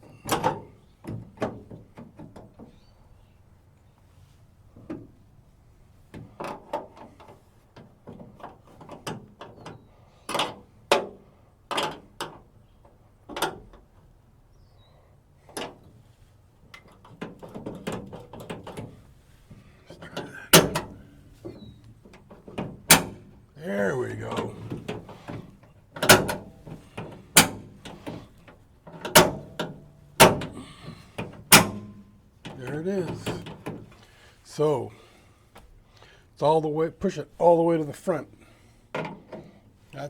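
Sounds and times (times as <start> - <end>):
metal door latch clicking: 20.5 - 21.1, 22.6 - 23.3, 26.0 - 28.2, 29.0 - 32.1.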